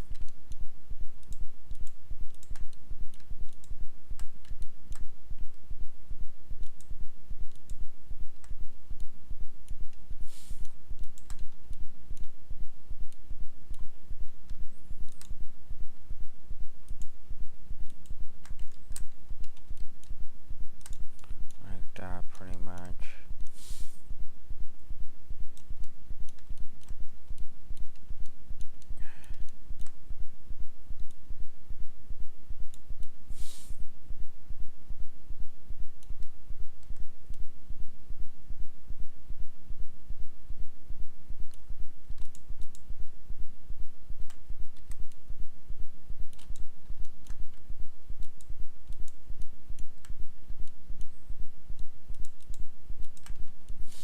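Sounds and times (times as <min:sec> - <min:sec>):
computer mouse clicks: 0:00.0 - 0:05.6, 0:06.6 - 0:12.4, 0:13.0 - 0:15.4, 0:16.9 - 0:17.2, 0:17.8 - 0:20.2, 0:20.8 - 0:21.6, 0:25.6 - 0:30.0, 0:41.4 - 0:42.9, 0:44.2 - 0:45.2, 0:46.2 - 0:47.6, 0:48.2 - 0:51.2, 0:51.8 - 0:54.0
pulsing electrical hum: 0:00.0 - 0:54.0.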